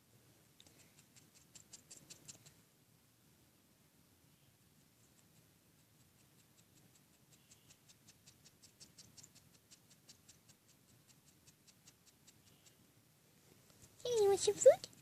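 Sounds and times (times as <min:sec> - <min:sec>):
bird beak clicking: 0:00.6 - 0:02.6, 0:05.2 - 0:12.8.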